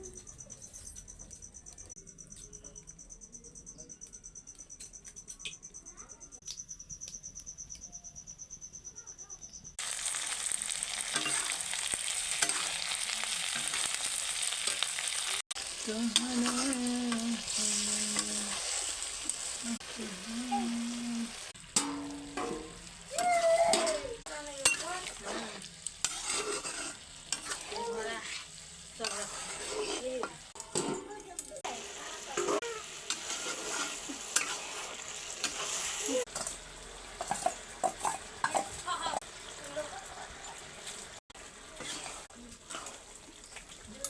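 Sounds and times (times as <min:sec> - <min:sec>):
chicken sizzling in hot oil: 0:09.8 - 0:44.0.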